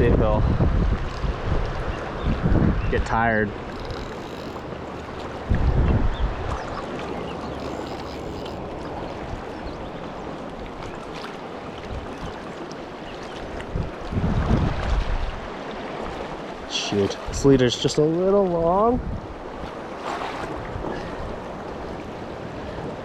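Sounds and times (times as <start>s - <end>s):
low rumble on microphone: 0.0s - 6.8s
fast river current rushing: 0.5s - 23.0s.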